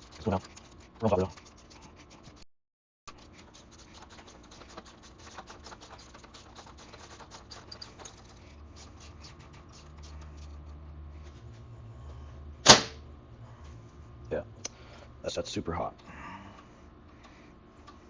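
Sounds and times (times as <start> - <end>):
hand tools scratching metal: 0.0 - 2.3
low steady hum: 3.1 - 18.0.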